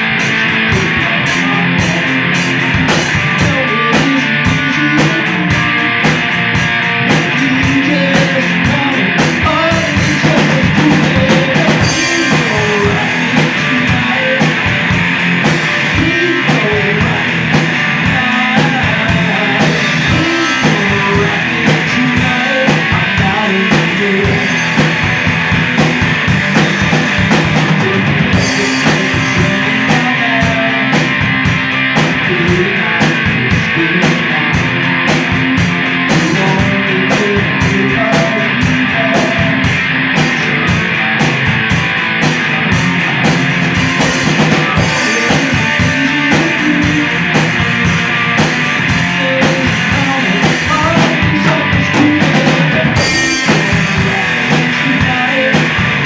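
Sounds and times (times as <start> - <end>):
drum kit: 0.0 - 56.0
guitars: 0.0 - 56.0
live rock band playing: 0.0 - 56.0.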